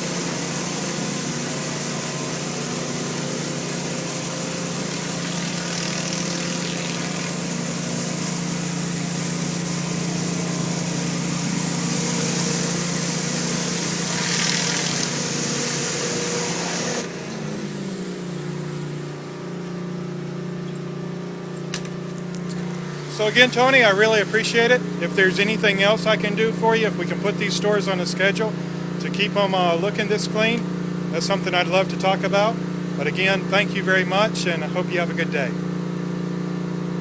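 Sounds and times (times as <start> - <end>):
water spray hissing on concrete: 0.0 - 18.8
pressure washer engine drone: 0.0 - 37.0.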